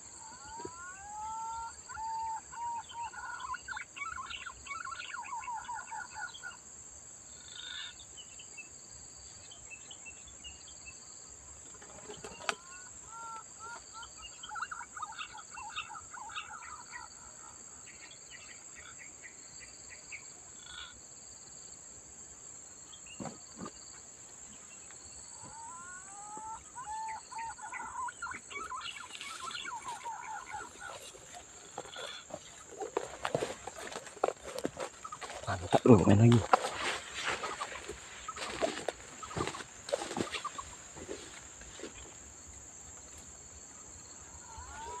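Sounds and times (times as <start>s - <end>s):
pigeons calling with whistled notes: 25.4s - 36.0s.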